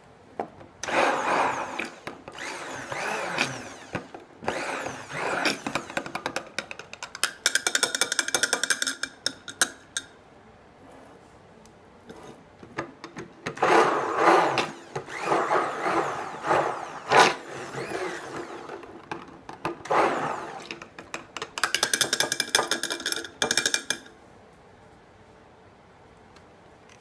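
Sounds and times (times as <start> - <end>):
stick blender running: 0.8 - 6.6, 13.5 - 22.8.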